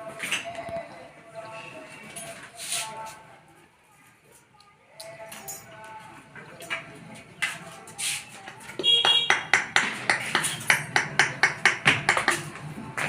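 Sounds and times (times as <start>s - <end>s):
knocks: 8.9s - 12.5s
rapid metallic taps: 8.9s - 12.5s.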